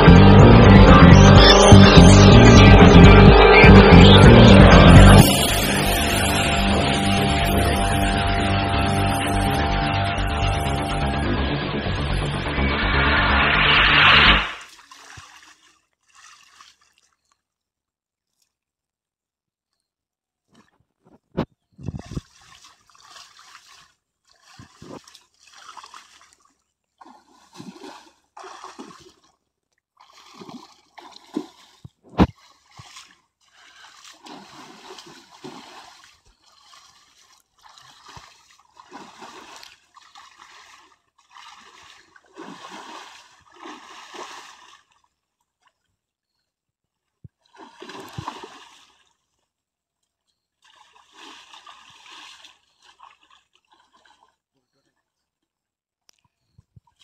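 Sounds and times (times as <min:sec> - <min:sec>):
water splashing: 0:14.2 - 0:17.3, 0:21.8 - 0:29.4, 0:30.0 - 0:45.0, 0:47.5 - 0:49.1, 0:50.6 - 0:54.3.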